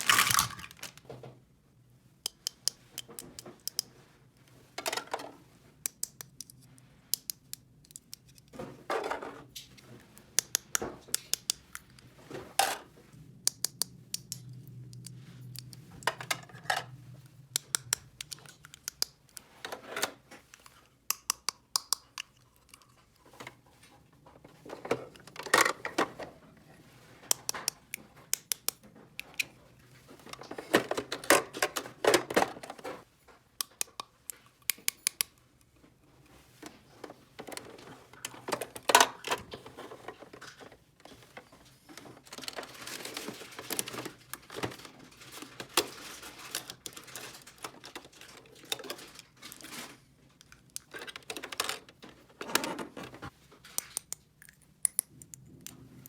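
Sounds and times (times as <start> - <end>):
plastic toy pieces clicking: 0.0 - 1.0, 5.9 - 6.6, 10.4 - 12.0, 17.5 - 19.4, 20.6 - 22.9, 28.4 - 29.4.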